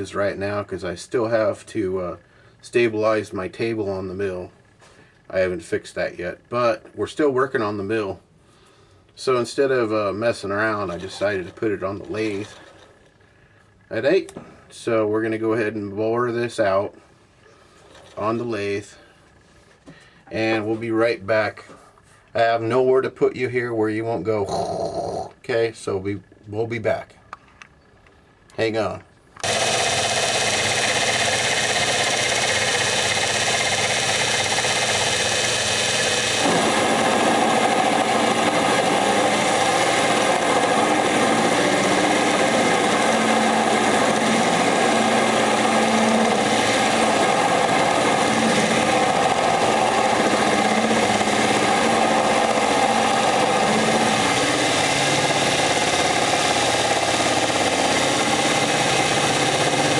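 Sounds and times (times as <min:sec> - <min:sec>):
metal lathe running: 0:10.4 - 0:12.9, 0:29.4 - 0:59.9.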